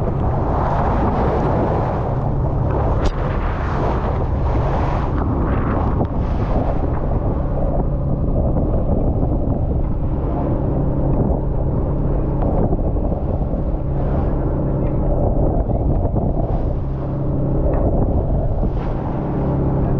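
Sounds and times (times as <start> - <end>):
boat engine humming: 0.0 - 19.9
wind buffeting microphone: 0.0 - 19.9.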